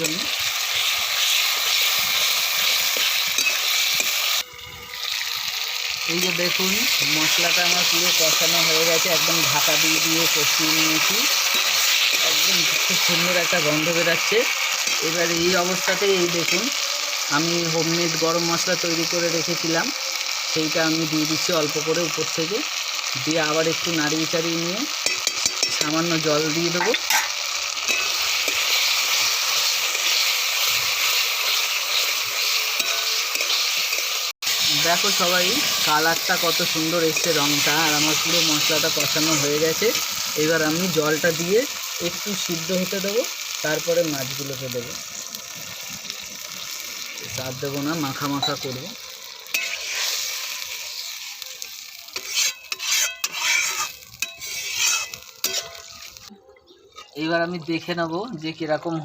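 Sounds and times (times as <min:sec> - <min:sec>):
paste sizzling in hot oil: 0:00.0 - 0:56.3
spatula scraping a pan: 0:26.8 - 0:40.3, 0:49.4 - 0:51.2, 0:52.1 - 0:56.3.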